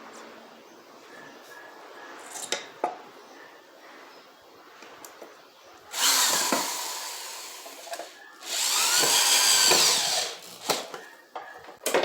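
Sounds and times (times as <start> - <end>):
electric drill drilling into wood: 5.9 - 11.0.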